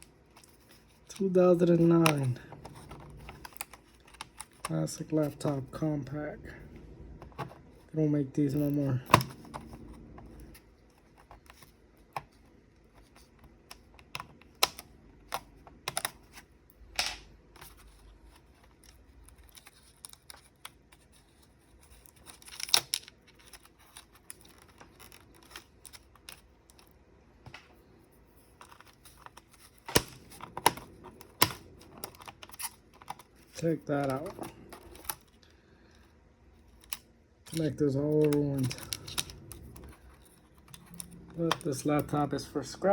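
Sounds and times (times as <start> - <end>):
plastic laptop case clicking: 28.6 - 33.4.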